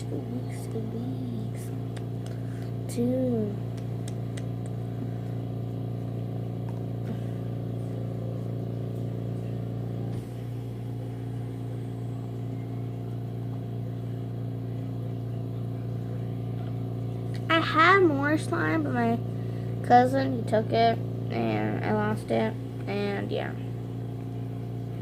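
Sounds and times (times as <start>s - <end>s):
low mechanical hum: 0.0s - 25.0s.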